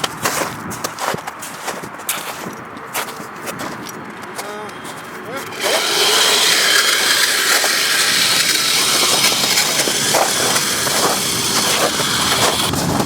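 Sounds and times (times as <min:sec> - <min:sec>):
loud steady rushing noise: 0:04.1 - 0:13.0
electric motor whining: 0:04.2 - 0:13.0.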